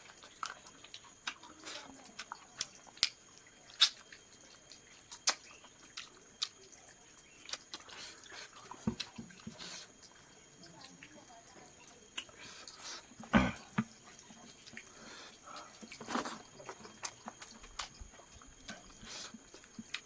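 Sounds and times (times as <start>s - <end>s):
person chewing with wet mouth clicks: 0.0s - 6.6s, 7.2s - 9.8s, 12.1s - 14.9s, 15.6s - 18.0s, 18.6s - 20.0s.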